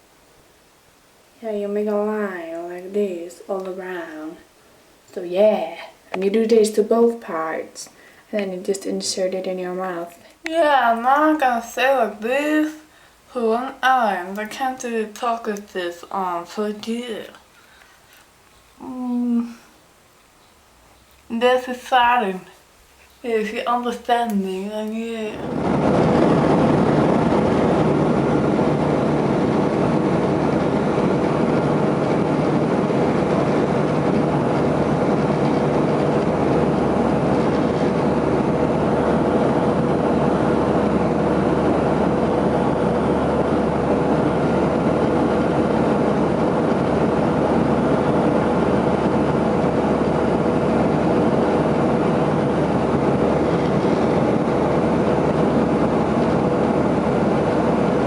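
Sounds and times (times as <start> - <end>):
airplane engine drone: 25.4 - 58.0.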